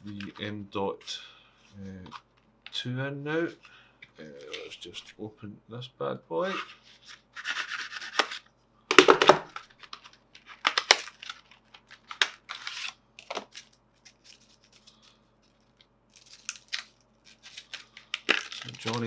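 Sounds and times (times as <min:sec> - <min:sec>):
packaging tearing and crinkling: 0:09.0 - 0:19.0.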